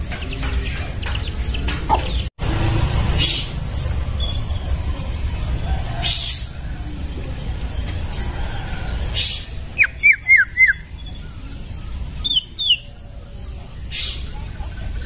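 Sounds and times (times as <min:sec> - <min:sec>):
low steady rumble: 0:00.0 - 0:15.0
bird whistling downslurred notes: 0:09.2 - 0:10.9.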